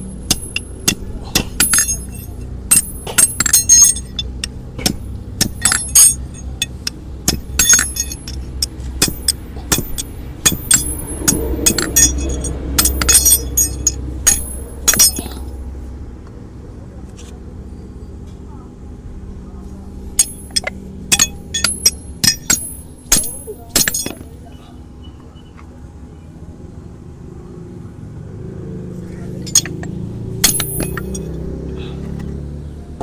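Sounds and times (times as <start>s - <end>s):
metal tools clicking and clinking: 0.0s - 15.6s, 20.2s - 24.4s, 29.3s - 31.6s.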